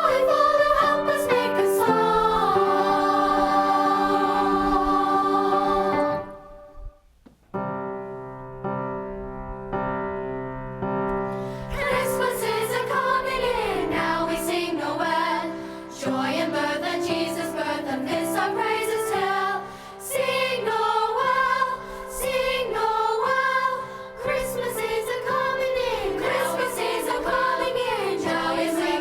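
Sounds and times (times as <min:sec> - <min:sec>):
choir singing holiday song: 0:00.0 - 0:07.0, 0:11.3 - 0:29.0
keyboard accompaniment: 0:00.0 - 0:14.9.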